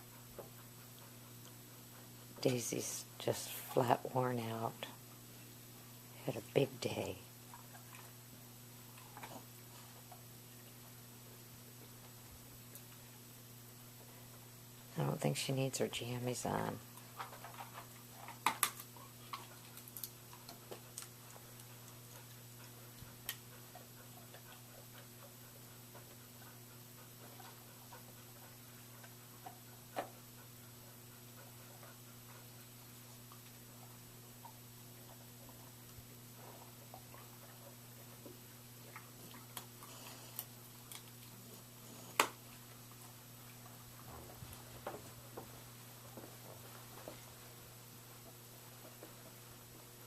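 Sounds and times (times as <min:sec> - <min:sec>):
steady low hum: 0:00.0 - 0:50.0
faint clicks and ticks: 0:16.9 - 0:41.4.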